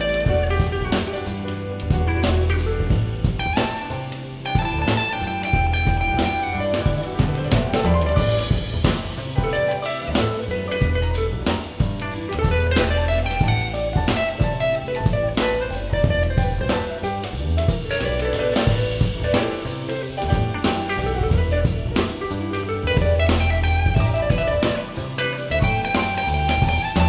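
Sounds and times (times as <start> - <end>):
instrumental soul-jazz music: 0.0 - 27.0.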